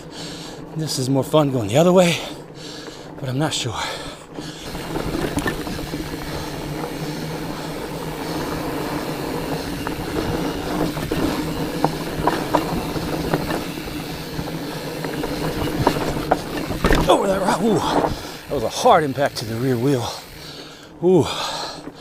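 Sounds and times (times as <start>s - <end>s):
bike and chain rattling: 0.0s - 22.0s
bike tires humming on trail: 0.0s - 22.0s
clicks and knocks over rocks: 14.9s - 18.2s.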